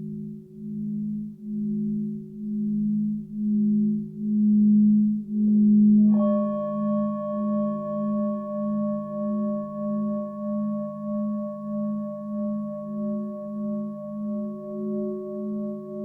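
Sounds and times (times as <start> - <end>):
singing bowl ringing: 5.4 - 16.0.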